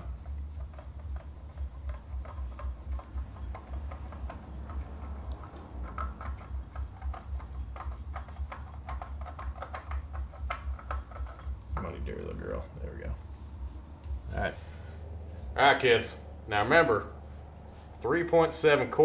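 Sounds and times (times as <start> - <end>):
steady low hum: 0.0 - 19.0.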